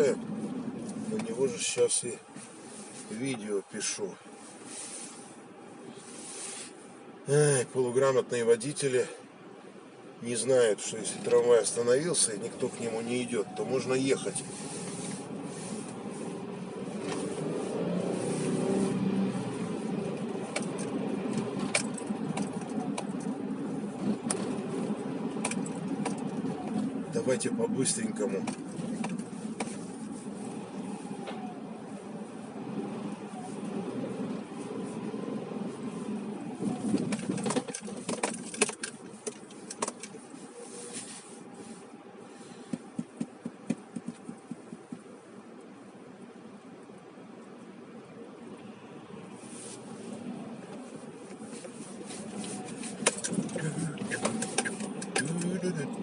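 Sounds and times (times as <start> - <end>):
car engine and road noise: 0.0 - 56.0
clicks and knocks in car cabin: 20.3 - 23.4, 25.3 - 26.8, 28.4 - 29.9, 36.6 - 40.2, 42.6 - 45.2, 52.2 - 56.0.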